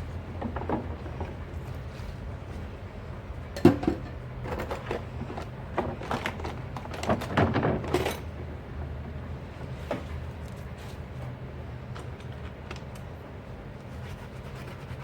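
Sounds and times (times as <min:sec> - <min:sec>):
low steady hum: 0:00.0 - 0:15.0
dishes clattering while washed: 0:03.5 - 0:06.2.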